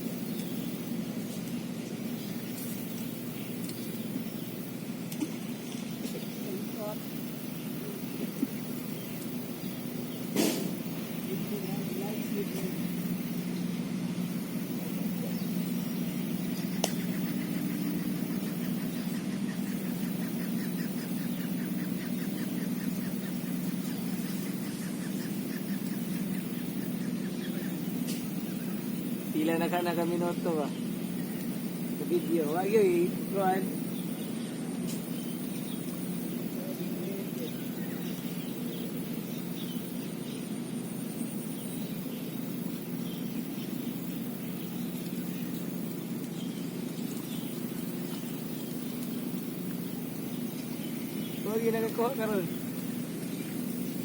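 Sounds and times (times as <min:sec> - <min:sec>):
faint bird chirps: 0:00.0 - 0:54.0
low mechanical hum: 0:00.0 - 0:54.0.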